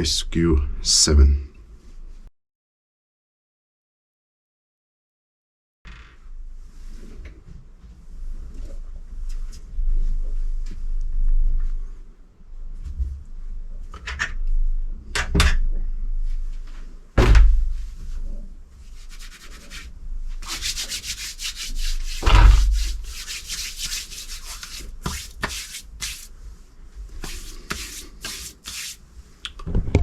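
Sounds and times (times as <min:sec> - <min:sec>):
scraping and rubbing: 0:18.8 - 0:26.4, 0:27.2 - 0:29.1.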